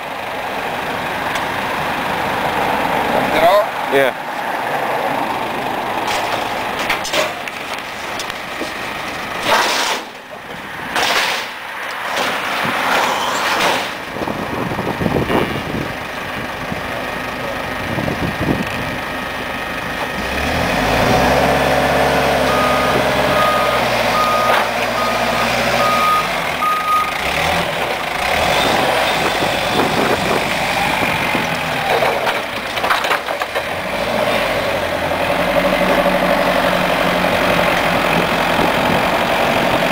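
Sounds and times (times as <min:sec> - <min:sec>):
heavy vehicle engine running: 0:00.0 - 0:39.9
reversing alarm beeping: 0:22.5 - 0:27.2.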